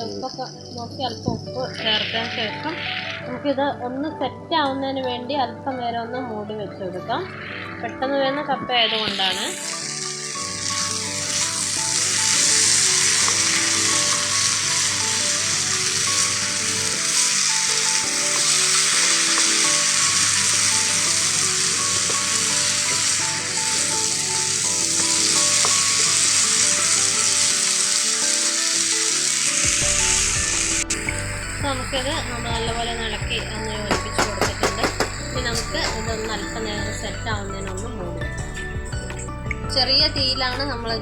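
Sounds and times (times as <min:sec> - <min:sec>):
soft background music: 0:00.0 - 0:41.0
food sizzling in hot oil: 0:08.7 - 0:37.6.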